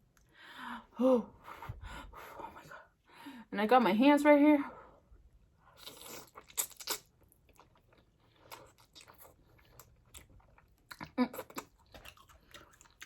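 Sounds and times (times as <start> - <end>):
crunchy food being chewed: 5.7 - 13.0.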